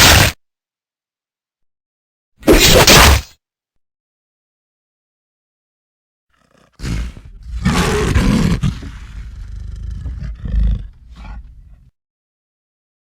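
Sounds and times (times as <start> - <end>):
monster growling roar: 6.4 - 11.8.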